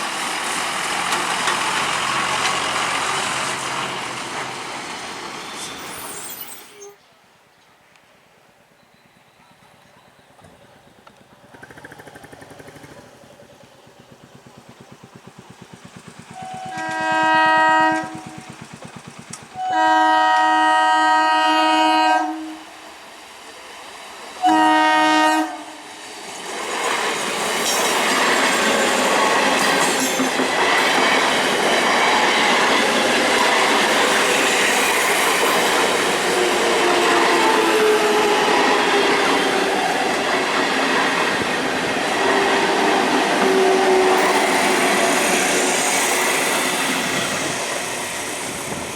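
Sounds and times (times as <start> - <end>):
train wheels clattering on rails: 0.0 - 6.2, 11.5 - 20.6, 26.1 - 48.9
electric train horn: 16.4 - 18.6, 19.6 - 22.9, 24.4 - 25.8, 43.4 - 45.7.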